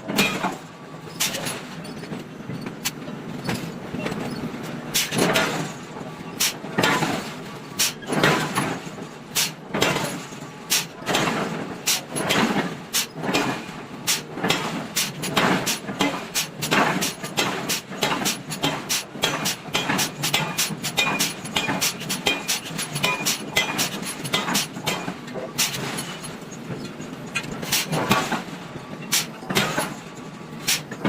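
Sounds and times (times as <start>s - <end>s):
hammer striking hot iron: 15.4s - 25.9s.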